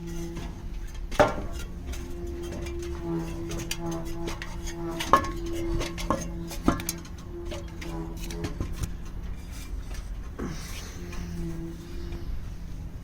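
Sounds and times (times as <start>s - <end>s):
steady low hum: 0.0s - 13.0s
sharp metallic knocks: 1.0s - 9.5s.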